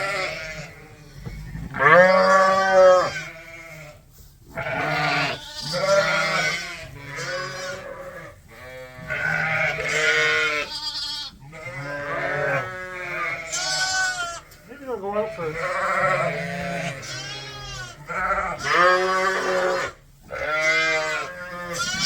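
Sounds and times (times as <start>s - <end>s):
sheep bleating: 0.0s - 22.0s.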